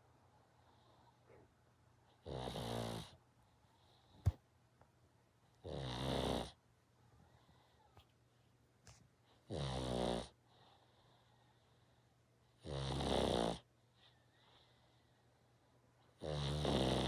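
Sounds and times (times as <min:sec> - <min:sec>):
dog snoring: 0:02.2 - 0:03.2, 0:05.6 - 0:06.6, 0:09.4 - 0:11.1, 0:12.6 - 0:13.7, 0:16.2 - 0:17.0.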